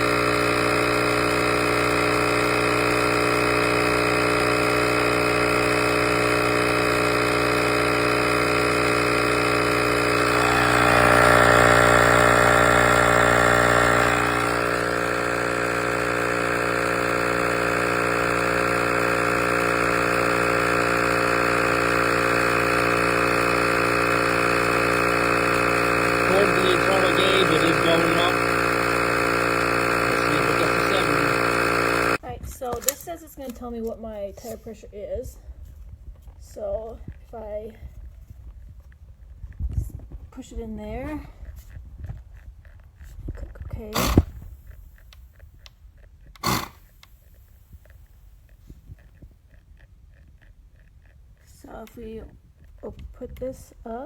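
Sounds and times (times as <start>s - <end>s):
electric air compressor humming: 0.0s - 32.3s, 43.8s - 45.2s, 46.4s - 49.0s.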